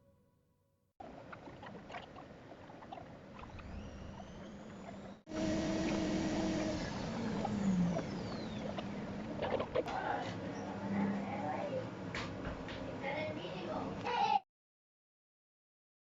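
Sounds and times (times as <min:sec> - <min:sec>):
washing machine hum: 0:01.0 - 0:14.4
motor tones: 0:02.8 - 0:11.3.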